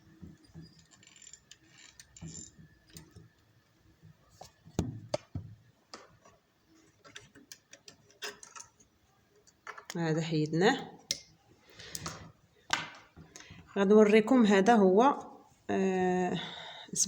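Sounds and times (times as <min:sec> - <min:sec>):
metal sewing machine parts clicking: 0:00.6 - 0:03.2, 0:06.9 - 0:10.0.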